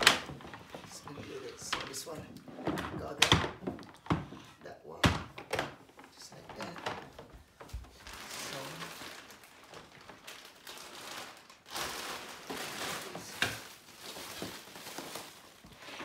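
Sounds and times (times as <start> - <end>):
packaging rustling: 5.8 - 16.0.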